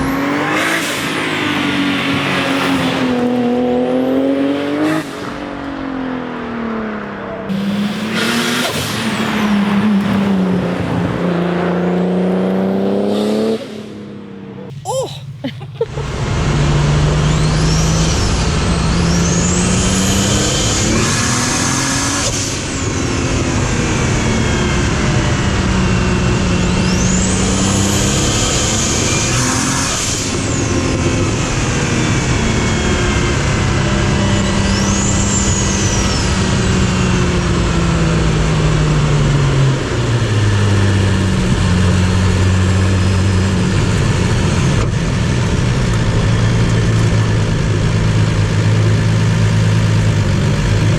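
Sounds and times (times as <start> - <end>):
car engine running: 13.4 - 50.9.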